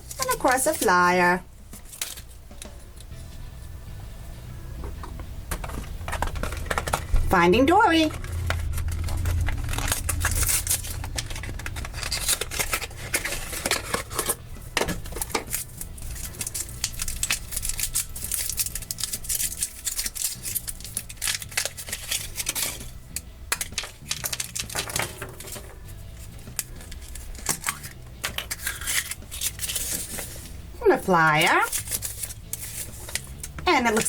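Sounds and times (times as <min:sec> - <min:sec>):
foil wrapper crinkling: 0:08.0 - 0:14.4, 0:15.0 - 0:30.6, 0:31.4 - 0:34.0
chocolate egg cracking: 0:08.3 - 0:25.6, 0:26.4 - 0:30.0.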